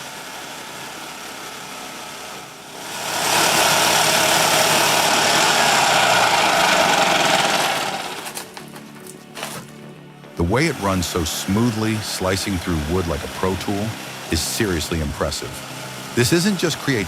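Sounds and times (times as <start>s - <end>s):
engine running: 0.0s - 17.0s
saw cutting log: 0.2s - 8.8s, 10.4s - 17.0s.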